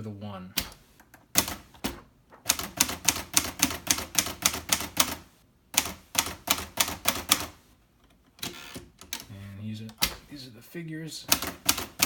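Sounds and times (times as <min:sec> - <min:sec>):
manual typewriter typing: 0:00.6 - 0:07.6, 0:11.3 - 0:12.0.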